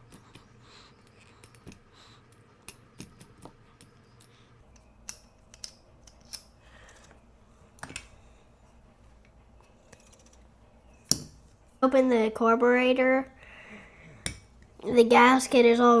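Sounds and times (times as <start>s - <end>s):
small metal parts clicking: 1.4s - 7.1s.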